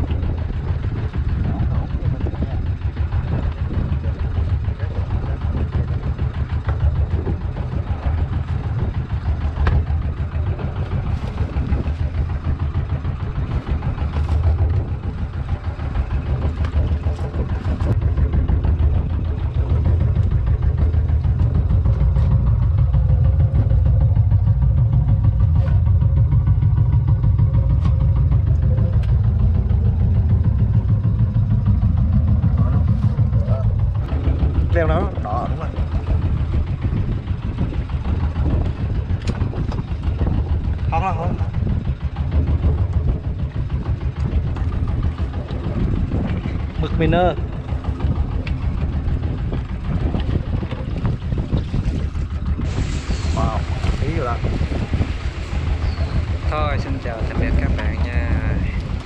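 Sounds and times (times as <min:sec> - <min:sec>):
boat engine droning: 0:00.0 - 0:59.0.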